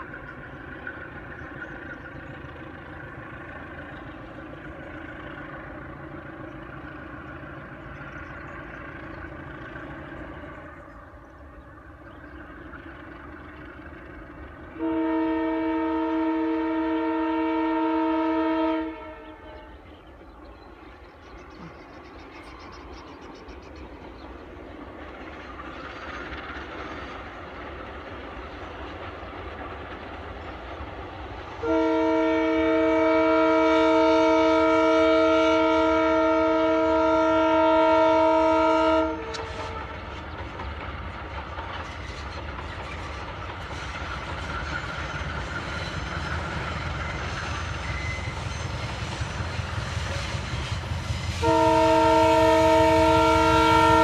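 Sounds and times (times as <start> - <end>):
locomotive engine rumble: 0.0 - 54.0
locomotive horn blast: 14.7 - 19.9, 31.6 - 40.1, 51.4 - 54.0.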